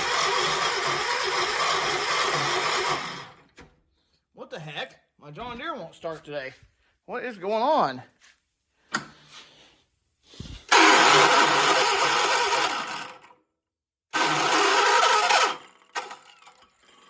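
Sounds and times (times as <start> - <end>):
electric starter cranking engine: 0.0 - 3.6, 10.7 - 13.4, 14.1 - 17.0.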